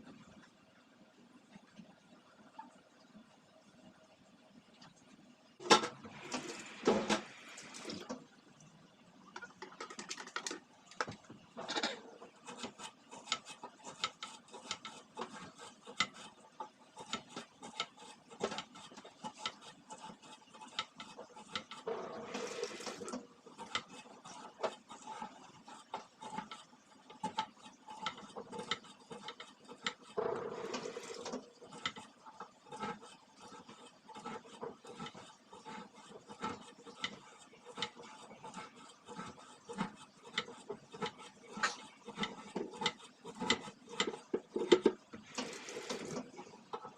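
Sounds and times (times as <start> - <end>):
running water: 21.9 - 23.3, 30.2 - 32.4, 44.2 - 46.9.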